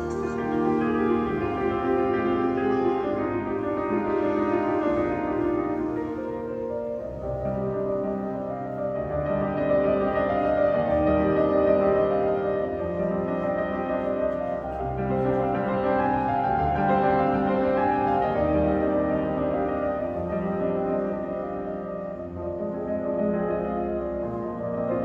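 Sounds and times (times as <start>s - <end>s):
held string notes: 0.0s - 7.3s
piano chords: 0.0s - 25.0s.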